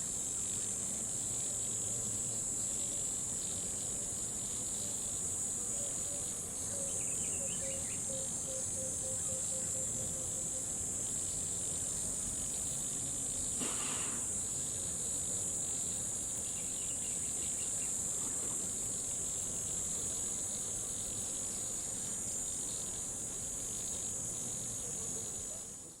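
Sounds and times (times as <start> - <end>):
crickets and insects chorus: 0.0 - 26.0.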